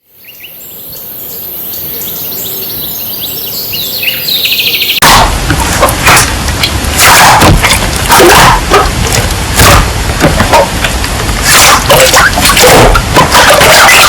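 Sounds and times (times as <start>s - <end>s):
birds chirping and trilling: 0.0s - 14.0s
loud crackling crunching noise: 5.0s - 14.0s.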